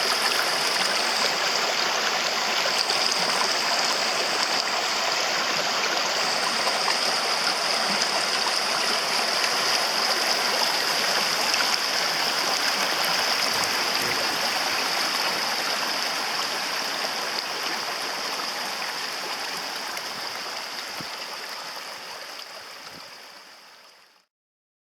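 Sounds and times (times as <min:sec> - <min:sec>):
mountain stream rushing: 0:00.0 - 0:23.9.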